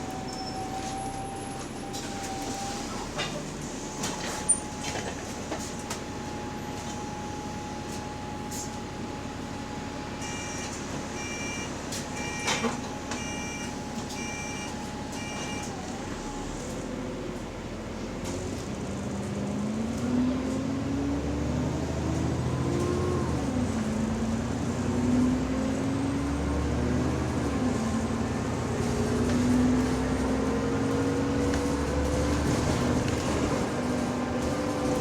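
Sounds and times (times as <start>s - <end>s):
bus engine noise: 0.0s - 35.0s
door warning beeper: 10.2s - 15.8s.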